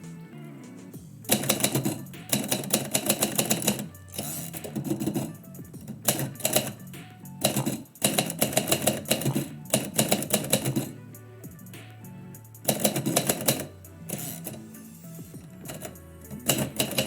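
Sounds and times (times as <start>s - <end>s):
background music: 0.0s - 17.0s
typewriter keys clicking: 1.3s - 11.0s, 12.5s - 14.7s, 15.4s - 17.0s.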